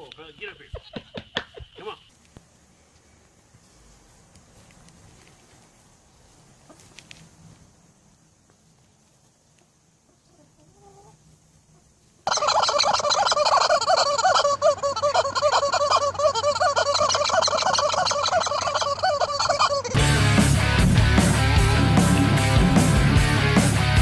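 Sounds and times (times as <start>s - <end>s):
chorus of fowl calling: 12.3s - 20.2s.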